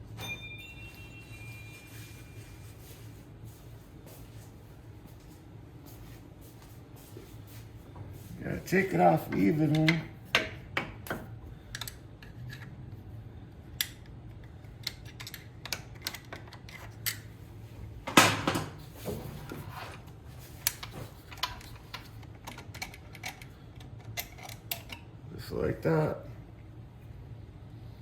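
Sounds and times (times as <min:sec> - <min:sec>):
metal clicks and clinks: 0:22.4 - 0:25.0.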